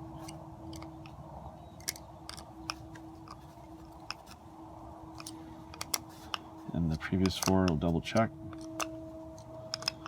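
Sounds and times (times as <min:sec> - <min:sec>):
faint steady hum: 0:00.0 - 0:10.0
hand tool clicks on screws: 0:05.2 - 0:10.0.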